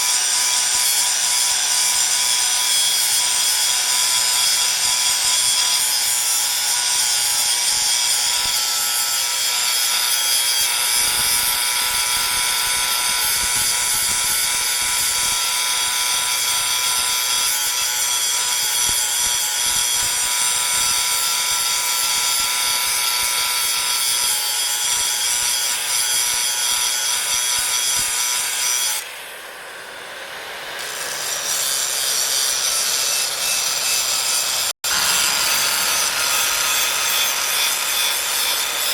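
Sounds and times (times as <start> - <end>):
metal grinding rasp: 30.8 - 38.9.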